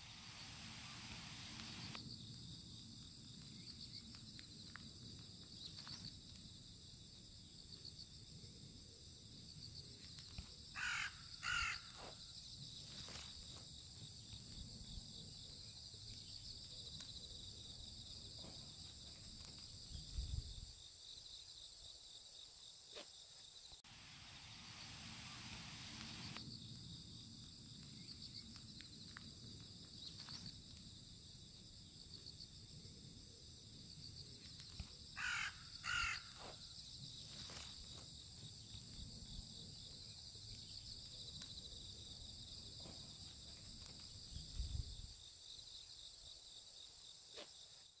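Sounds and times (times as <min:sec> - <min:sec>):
insects trilling: 0:00.0 - 0:48.0
crow cawing: 0:10.8 - 0:12.0, 0:35.2 - 0:36.4.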